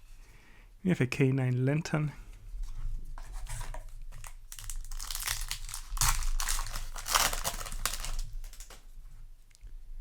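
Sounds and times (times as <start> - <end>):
foil wrapper and cards crinkling: 3.2 - 8.9.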